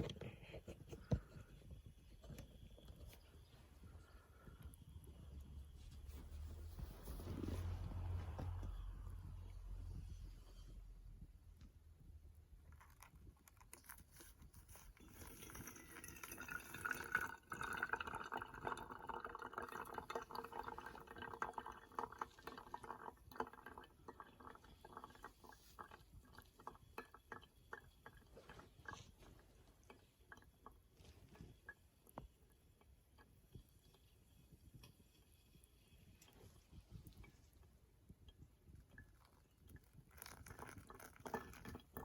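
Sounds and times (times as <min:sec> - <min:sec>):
water pouring into a vessel: 0:13.9 - 0:32.2, 0:38.7 - 0:42.0
water dripping: 0:15.4 - 0:35.3.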